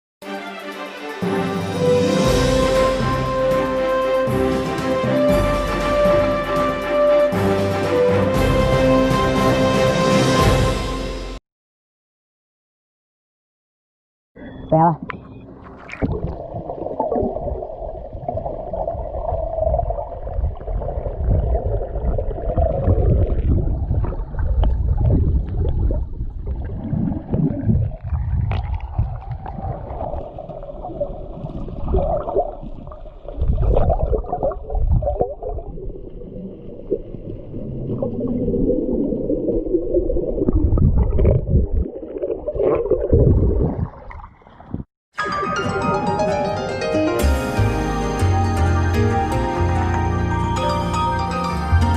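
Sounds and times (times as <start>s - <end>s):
underwater rumbling and gurgling: 15.1s - 44.9s.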